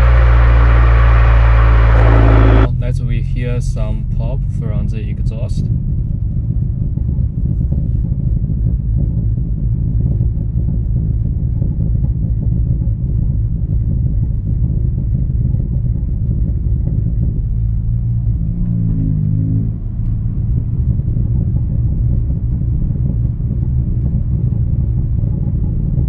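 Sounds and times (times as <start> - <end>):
exhaust pops on the overrun: 0.0 - 4.6, 5.2 - 26.0
car exhaust rumble from inside: 0.0 - 26.0.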